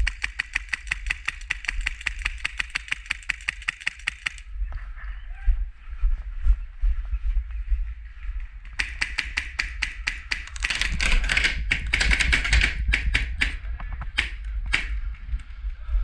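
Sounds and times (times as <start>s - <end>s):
airsoft gun firing rapid shots: 0.0s - 4.4s, 8.8s - 13.6s
low wind rumble on microphone: 4.4s - 8.8s, 10.5s - 16.0s.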